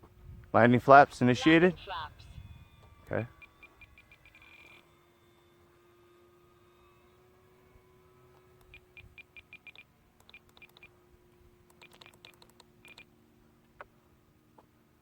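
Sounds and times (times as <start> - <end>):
sharp click: 9.7 - 10.9.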